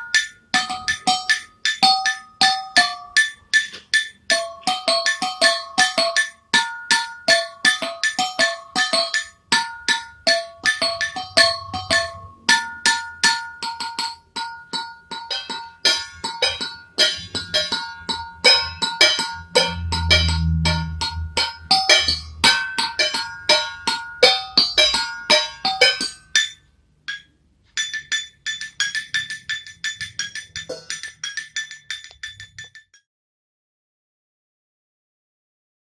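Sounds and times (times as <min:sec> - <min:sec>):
kitchen utensils struck rhythmically: 0:00.0 - 0:33.0
deep low sound: 0:19.4 - 0:22.6.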